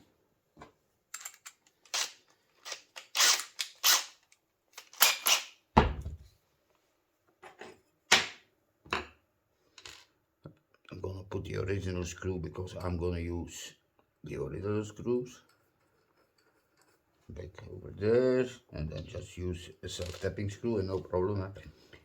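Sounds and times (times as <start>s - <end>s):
small metal parts clinking: 1.1s - 5.5s, 19.9s - 20.3s.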